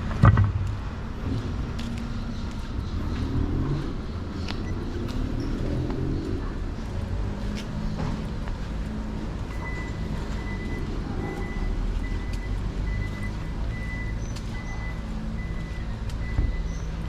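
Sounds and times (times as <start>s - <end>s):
street traffic: 0.0s - 17.0s
high electronic warning beep: 1.3s - 5.6s, 9.5s - 16.8s.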